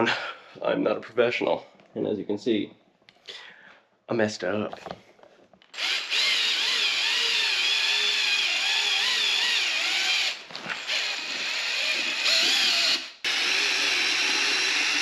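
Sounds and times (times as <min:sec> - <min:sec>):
power drill mixing compound: 0:05.7 - 0:15.0.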